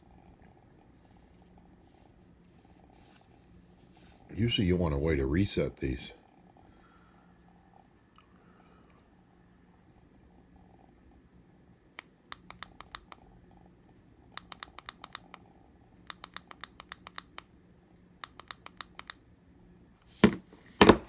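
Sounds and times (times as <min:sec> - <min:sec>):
handling knock: 0:20.2 - 0:21.0.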